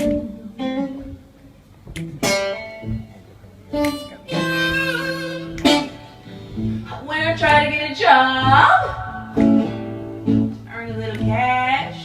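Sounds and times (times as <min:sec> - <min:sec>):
blues guitar chords: 0:00.0 - 0:12.0
person singing: 0:04.3 - 0:05.6.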